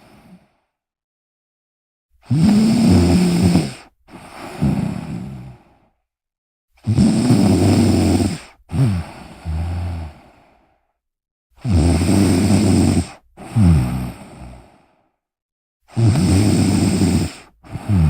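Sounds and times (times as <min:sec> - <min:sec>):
person snoring: 0:02.2 - 0:06.0, 0:06.8 - 0:10.7, 0:11.6 - 0:15.0, 0:15.9 - 0:18.0.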